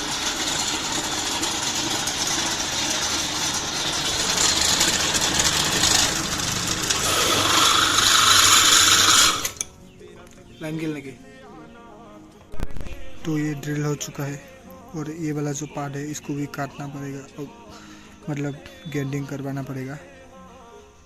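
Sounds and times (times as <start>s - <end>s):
electric drill boring steel: 0.0s - 9.7s
higher grinding tone: 0.0s - 9.7s.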